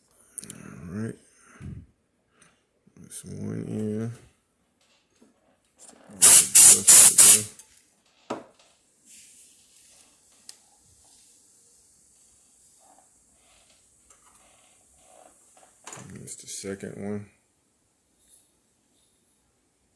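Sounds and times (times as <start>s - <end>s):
compressed air spray bursts: 6.2s - 7.5s.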